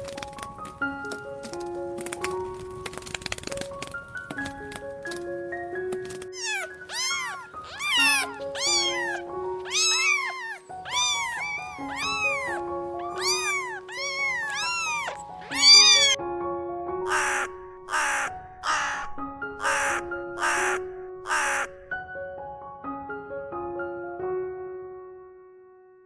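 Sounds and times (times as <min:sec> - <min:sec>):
background music with held notes: 0:00.0 - 0:26.0
cat meowing: 0:06.4 - 0:16.2, 0:17.1 - 0:21.7.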